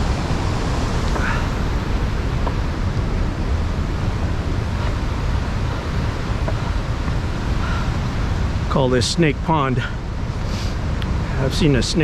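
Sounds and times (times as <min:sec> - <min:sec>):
waterfall rushing: 0:00.0 - 0:09.0
wind buffeting microphone: 0:00.0 - 0:11.4.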